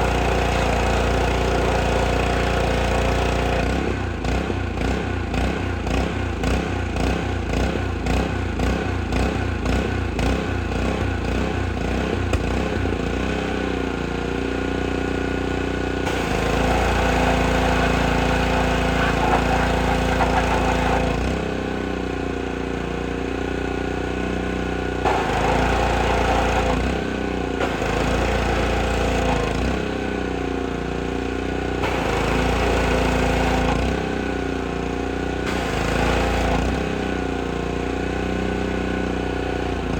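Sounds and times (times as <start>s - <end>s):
pressure washer engine running: 0.0s - 39.9s
high-pressure water hissing: 16.1s - 21.2s, 25.1s - 26.8s, 27.6s - 29.4s, 31.8s - 33.8s, 35.5s - 36.8s.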